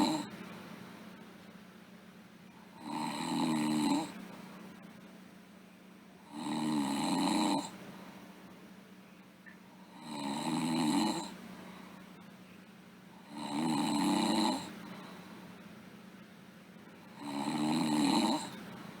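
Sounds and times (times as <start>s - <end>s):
girl snoring: 0.0s - 0.3s, 2.8s - 4.2s, 6.3s - 7.7s, 9.9s - 11.4s, 13.2s - 14.7s, 17.1s - 18.6s
faint steady hum: 0.0s - 19.0s.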